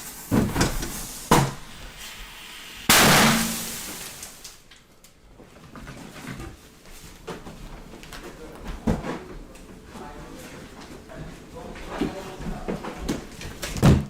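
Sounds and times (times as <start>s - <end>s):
firework hissing burst: 0.9s - 4.6s
firework bangs: 2.9s - 4.2s.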